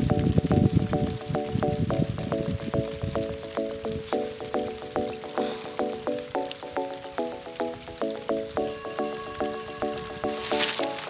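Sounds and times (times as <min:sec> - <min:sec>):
background music with steady beat: 0:00.0 - 0:11.0.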